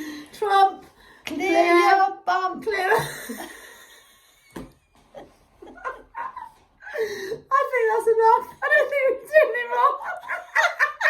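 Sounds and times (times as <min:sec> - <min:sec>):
people laughing: 0:05.2 - 0:07.1, 0:10.0 - 0:11.0.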